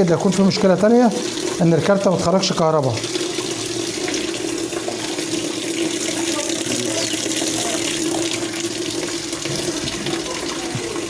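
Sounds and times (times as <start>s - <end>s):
water rushing into washing machine: 0.0s - 11.0s.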